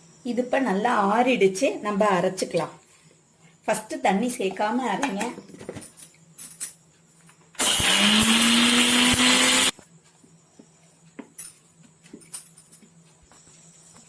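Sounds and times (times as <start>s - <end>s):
mixer grinder motor whine: 7.6s - 9.8s.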